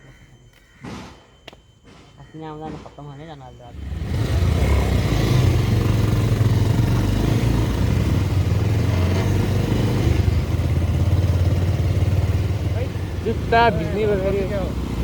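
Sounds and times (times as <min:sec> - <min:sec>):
motorcycle engine running: 0:03.7 - 0:15.0.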